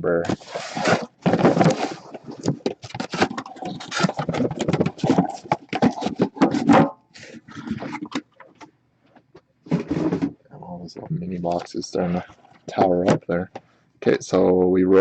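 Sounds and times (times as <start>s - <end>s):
cardboard boxes scraping and rustling: 0.3s - 6.8s, 9.7s - 10.4s.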